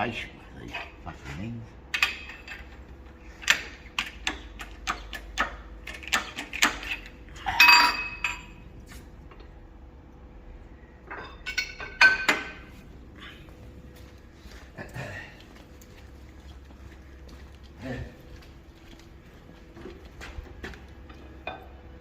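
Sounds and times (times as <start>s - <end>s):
metal tools clinking: 6.8s - 8.6s, 11.1s - 12.7s
ringing metal clank: 7.6s - 8.6s.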